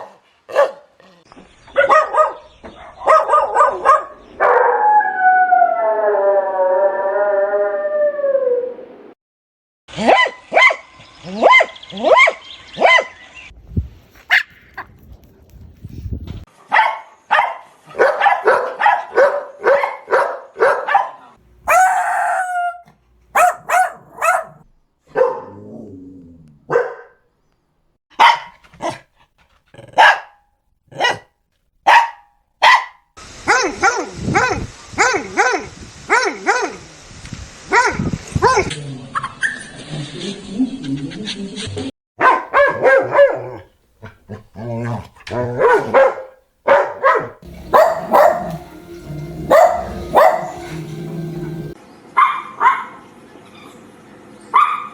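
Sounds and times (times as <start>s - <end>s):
dogs barking: 0.0s - 1.1s, 1.7s - 4.7s, 10.0s - 13.1s, 14.3s - 14.9s, 16.7s - 25.7s, 26.7s - 27.2s, 28.2s - 29.0s, 29.9s - 31.3s, 31.9s - 33.0s, 42.2s - 53.0s, 54.6s - 54.9s.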